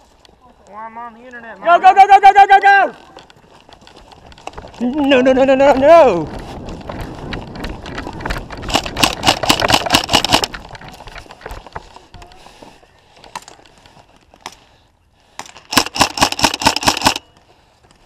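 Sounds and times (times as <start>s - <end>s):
airsoft gun firing full auto: 8.7s - 10.5s, 15.7s - 17.2s.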